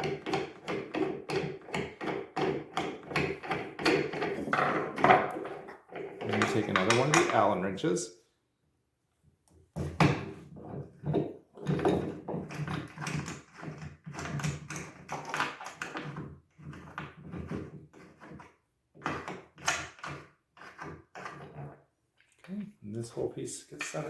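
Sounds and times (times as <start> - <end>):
metal parts tapping and scraping: 3.4 - 7.5.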